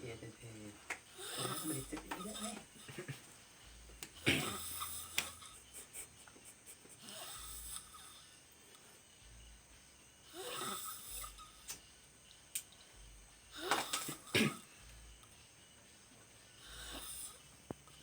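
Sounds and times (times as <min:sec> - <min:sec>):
person snoring: 0:01.1 - 0:03.1, 0:04.2 - 0:08.4, 0:10.2 - 0:11.8, 0:13.5 - 0:14.7, 0:16.6 - 0:17.4.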